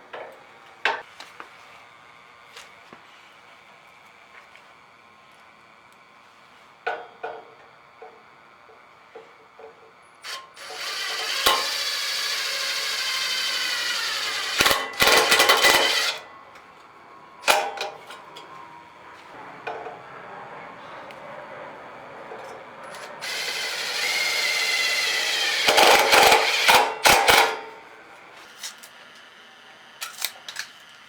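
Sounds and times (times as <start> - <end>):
handheld electric power tool running: 10.2 - 16.3, 22.9 - 31.0
harsh bursts of metalwork: 10.3 - 16.3, 22.9 - 29.0.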